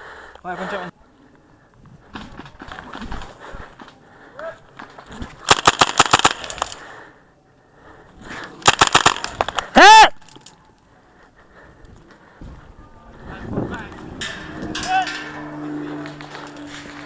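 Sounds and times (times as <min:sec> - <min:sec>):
airsoft guns firing bursts: 0:05.5 - 0:06.8, 0:08.6 - 0:09.6
person shouting: 0:09.7 - 0:10.3.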